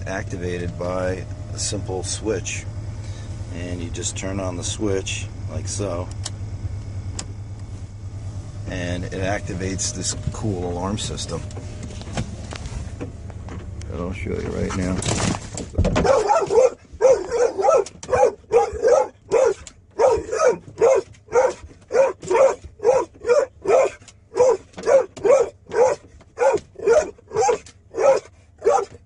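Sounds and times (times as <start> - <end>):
dog barking: 16.0 - 29.0.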